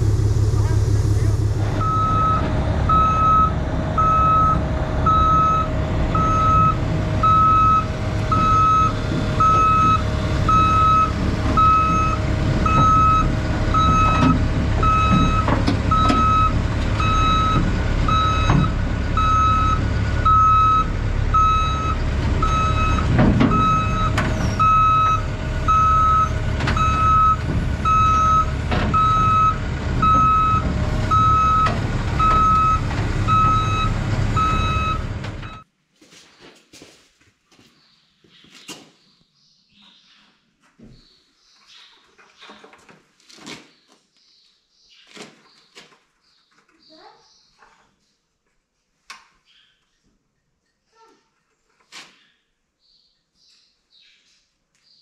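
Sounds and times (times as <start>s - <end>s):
diesel engine running: 0.0s - 35.6s
backup alarm beeping: 1.8s - 35.6s.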